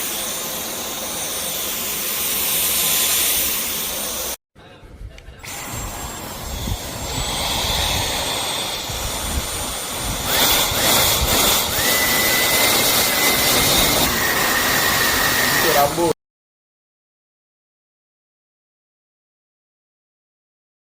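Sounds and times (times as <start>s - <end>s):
vacuum cleaner whine: 0.0s - 4.4s, 5.4s - 16.2s.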